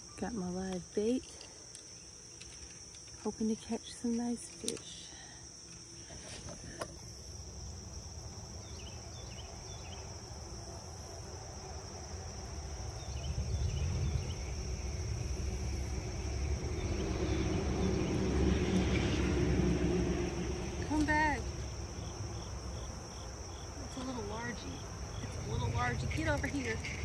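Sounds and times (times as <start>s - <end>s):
high-pitched insect chorus: 0.0s - 27.0s
low rumble: 13.0s - 22.4s.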